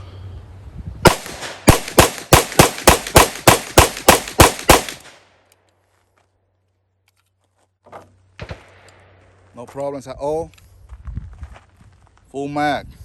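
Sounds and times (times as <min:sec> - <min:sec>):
pistol firing rapid shots: 0:01.1 - 0:05.2.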